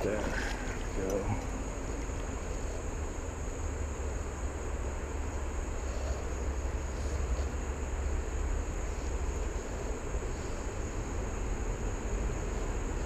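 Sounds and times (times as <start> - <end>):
creek water rushing: 0.0 - 3.3.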